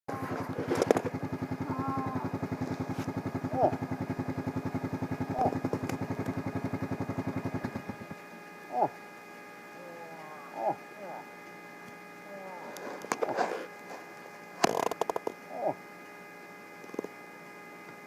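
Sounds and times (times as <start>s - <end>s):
vehicle engine idling: 0.1s - 13.1s
person exclaiming oh: 1.6s - 2.4s.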